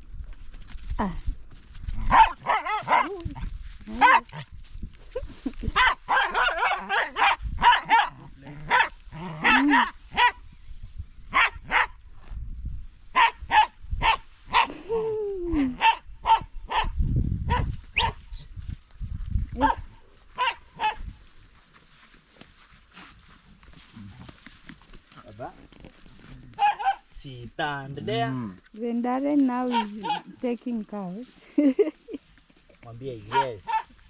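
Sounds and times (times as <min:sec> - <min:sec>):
dog barking: 0:02.1 - 0:03.2, 0:04.0 - 0:04.4, 0:05.8 - 0:10.4, 0:11.3 - 0:12.0, 0:13.2 - 0:14.7, 0:15.8 - 0:18.2, 0:19.6 - 0:21.0, 0:26.6 - 0:27.1, 0:29.7 - 0:30.4, 0:33.3 - 0:34.0.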